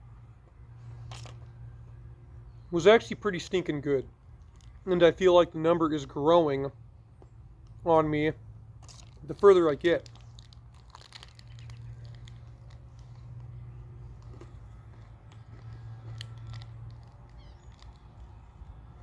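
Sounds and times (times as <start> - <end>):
person chewing crunchy candy: 8.8 - 18.7.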